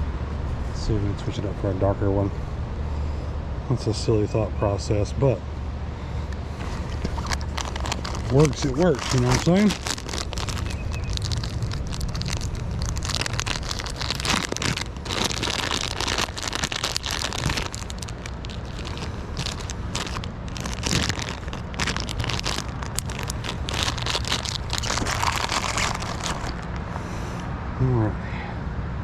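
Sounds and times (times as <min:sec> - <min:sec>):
steady low rumble: 0:00.0 - 0:29.0
plastic packaging crinkling: 0:06.8 - 0:26.8.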